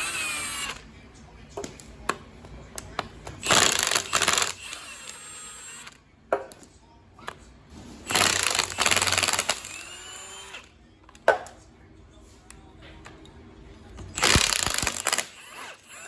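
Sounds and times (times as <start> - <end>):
power tool rattling: 3.4 - 6.0, 7.8 - 10.7, 14.2 - 16.0
sharp metal clicks: 14.2 - 15.8.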